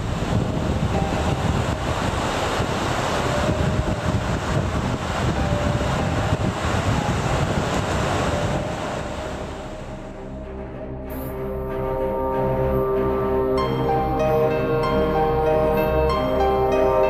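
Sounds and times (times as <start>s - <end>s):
wind buffeting microphone: 0.0s - 10.0s
sea surf: 0.0s - 10.4s, 11.0s - 17.0s.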